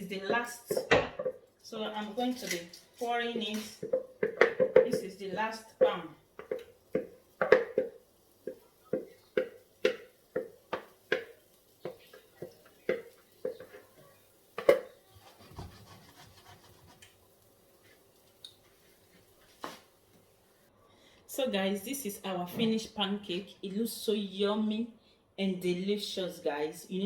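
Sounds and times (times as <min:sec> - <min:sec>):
utensil knocking against cookware: 0:00.2 - 0:01.4, 0:03.8 - 0:13.8.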